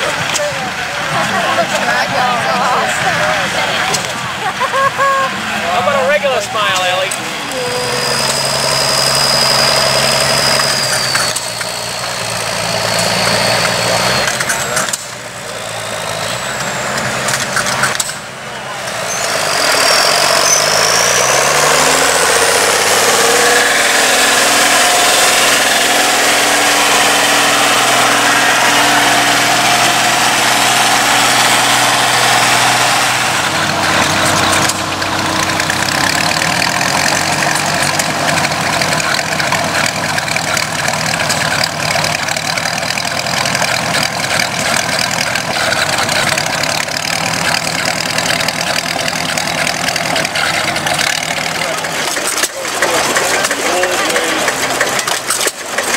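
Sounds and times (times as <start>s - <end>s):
engine running: 0.0s - 55.9s.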